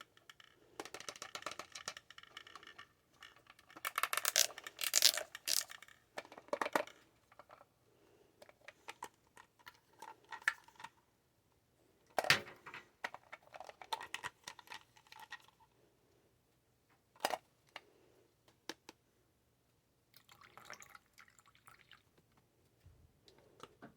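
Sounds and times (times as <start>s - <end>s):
plastic parts clattering: 0.0s - 7.7s, 8.4s - 11.0s, 12.1s - 15.6s, 17.2s - 17.8s
plastic toy parts clicking and rattling: 0.0s - 7.7s, 8.4s - 11.0s, 12.1s - 15.7s, 17.2s - 17.8s.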